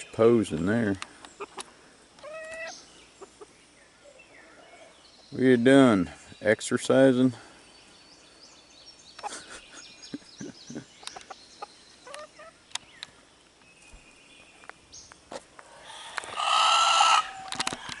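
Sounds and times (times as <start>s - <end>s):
chickens clucking: 0.1s - 5.9s, 9.1s - 12.8s, 15.3s - 18.0s
chicken harsh call: 15.9s - 17.5s.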